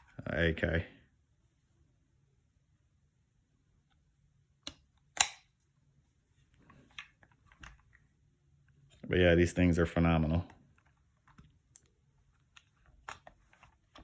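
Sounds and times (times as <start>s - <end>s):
pistol metallic clicks: 4.7s - 5.5s.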